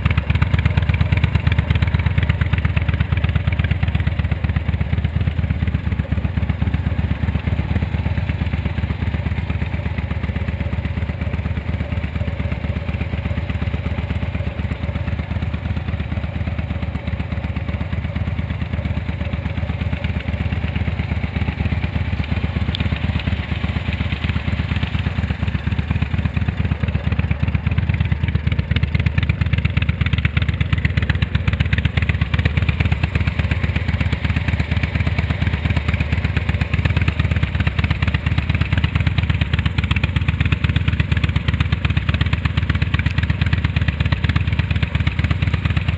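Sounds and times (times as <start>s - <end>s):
motorcycle engine pulsing exhaust: 0.0s - 45.9s.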